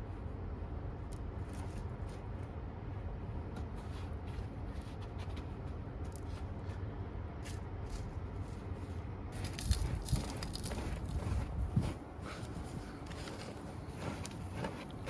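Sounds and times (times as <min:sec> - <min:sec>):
steady low rumble: 0:05.4 - 0:15.0
light rustling and crackling: 0:07.9 - 0:15.0.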